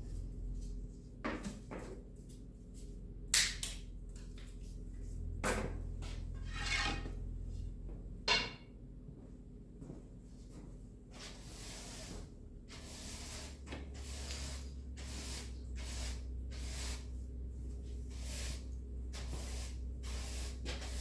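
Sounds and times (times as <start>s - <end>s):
low steady hum: 0.0s - 21.0s
short scrape: 11.2s - 17.1s, 18.1s - 21.0s.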